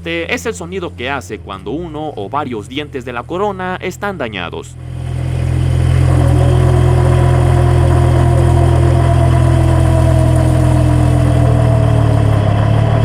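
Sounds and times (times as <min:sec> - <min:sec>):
differential mechanical drone and whine: 0:00.0 - 0:13.0.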